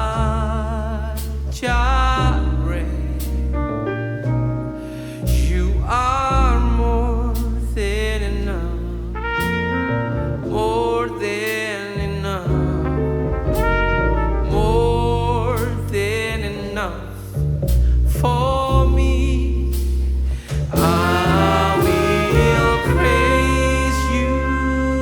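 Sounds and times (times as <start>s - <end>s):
jazz band playing: 2.2s - 17.9s, 18.7s - 25.0s
trumpet melody: 9.2s - 11.4s, 12.8s - 15.3s, 20.8s - 25.0s.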